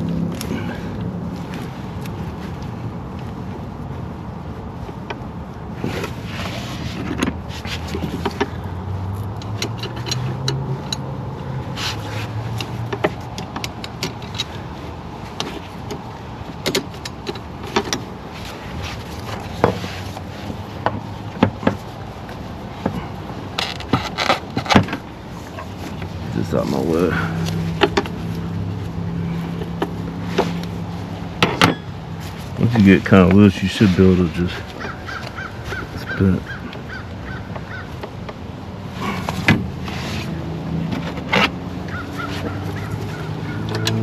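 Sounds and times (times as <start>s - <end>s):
wrench clicking on bolt: 9.3s - 11.1s.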